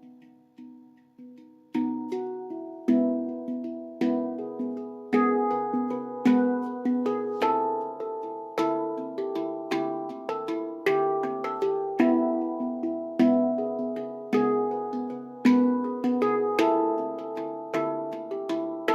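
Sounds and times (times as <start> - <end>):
instrumental music of struck notes: 0.0 - 18.9.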